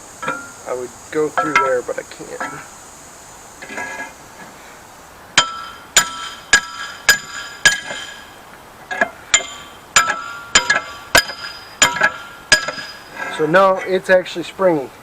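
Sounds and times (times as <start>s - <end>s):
hammer blows on steel spring: 0.2s - 2.7s, 5.4s - 8.3s, 9.0s - 13.4s.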